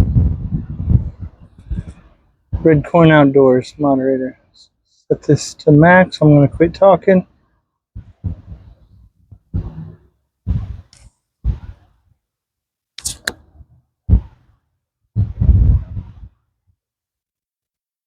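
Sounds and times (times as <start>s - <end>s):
low thumps and rumbles: 0.0s - 2.9s, 8.0s - 11.8s, 15.2s - 16.3s.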